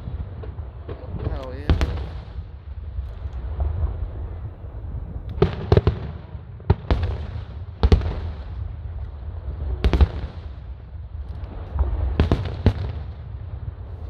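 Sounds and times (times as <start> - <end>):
fireworks bangs: 0.0 - 14.0
low rumble: 3.1 - 5.5.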